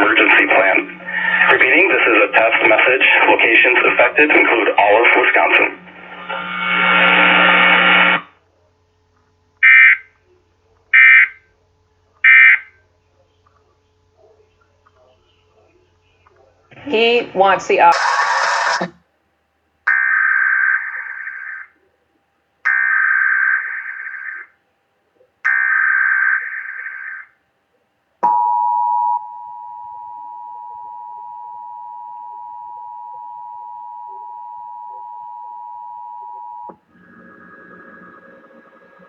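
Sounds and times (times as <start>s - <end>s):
digital data bursts: 0.0s - 8.2s, 17.8s - 18.9s
steady attention tone: 0.0s - 8.3s, 16.9s - 19.0s, 28.2s - 39.0s.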